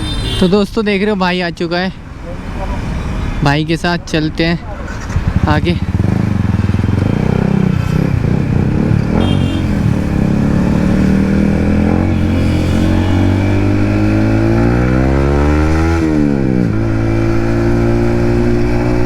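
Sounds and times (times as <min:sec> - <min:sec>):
motorcycle engine revving: 0:04.7 - 0:19.0.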